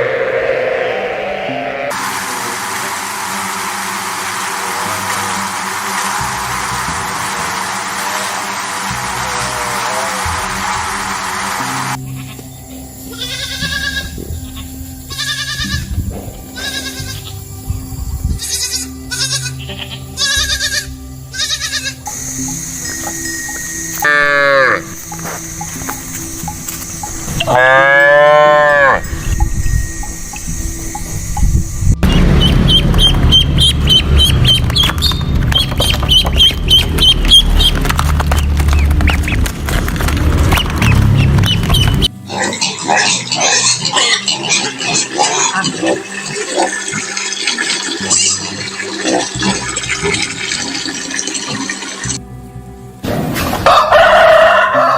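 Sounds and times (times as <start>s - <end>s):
steady low rumble: 0.0s - 3.3s, 29.1s - 42.1s
goat bleating: 12.0s - 12.4s, 13.1s - 15.9s, 16.6s - 17.3s, 18.4s - 22.1s
ducks calling: 32.0s - 52.2s.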